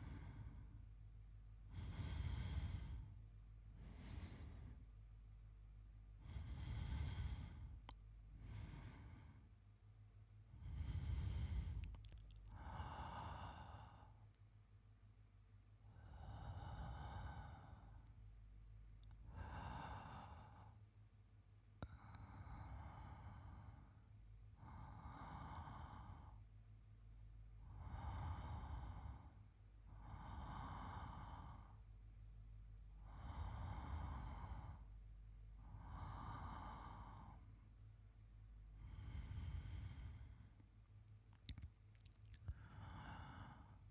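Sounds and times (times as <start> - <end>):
man breathing in sleep: 0.0 - 0.9, 1.6 - 5.0, 6.1 - 9.6, 10.5 - 14.2, 15.8 - 18.2, 19.1 - 20.8, 21.8 - 26.5, 27.6 - 31.9, 33.0 - 35.0, 35.6 - 37.7, 38.7 - 40.7, 41.4 - 43.9.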